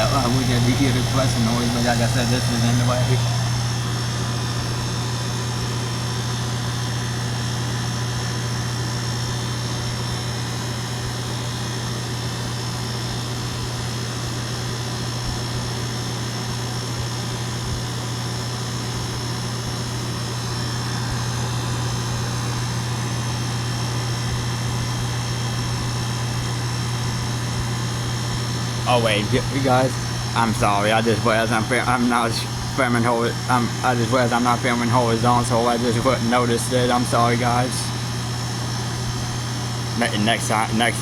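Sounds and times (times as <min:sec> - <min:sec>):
heat pump low hum: 0:00.0 - 0:41.0.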